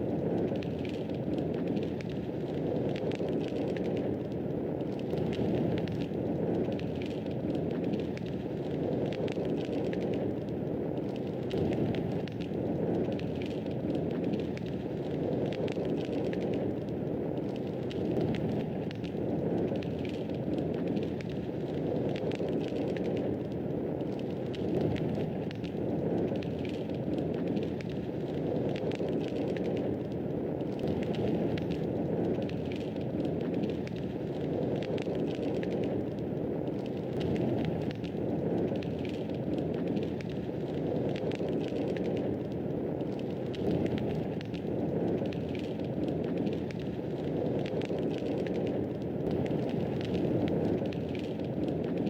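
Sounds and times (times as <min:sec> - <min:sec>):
fireplace fire crackling: 0:00.0 - 0:52.0.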